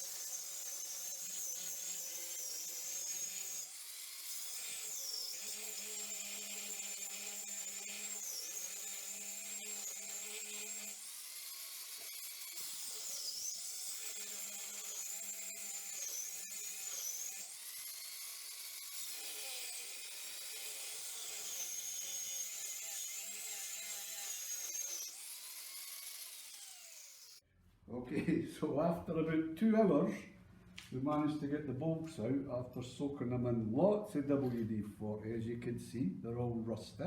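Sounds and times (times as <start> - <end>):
power cutting tool whining: 0.0 - 27.4.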